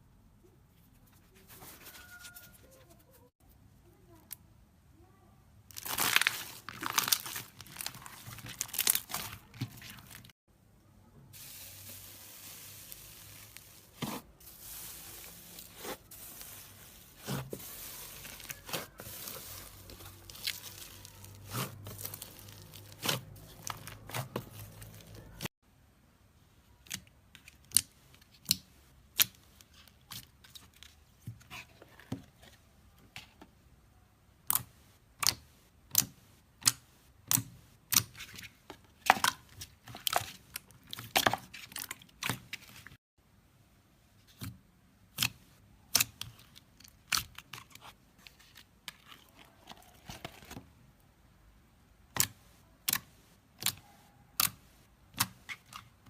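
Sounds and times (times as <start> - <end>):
slime crackling and popping: 5.7 - 10.3.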